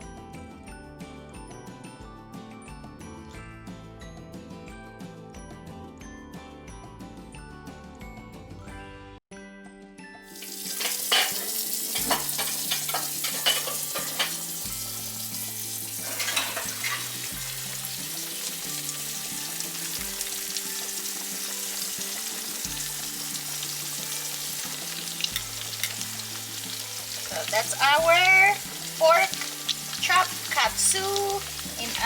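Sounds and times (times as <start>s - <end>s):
background music: 0.0s - 32.0s
meat sizzling in hot oil: 10.3s - 32.0s.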